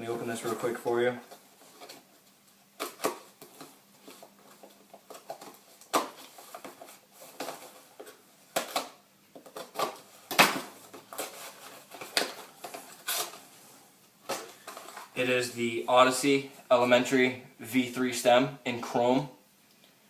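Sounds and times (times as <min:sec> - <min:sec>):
packaging rustling: 0:00.4 - 0:13.6, 0:14.2 - 0:15.2.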